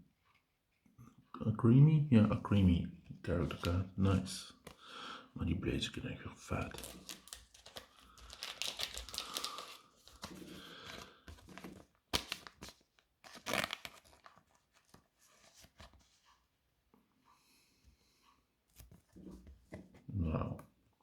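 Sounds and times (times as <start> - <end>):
trading cards being handled: 3.3 - 4.8, 6.5 - 16.3
plastic wrapping crinkling: 3.4 - 3.8, 6.5 - 15.0.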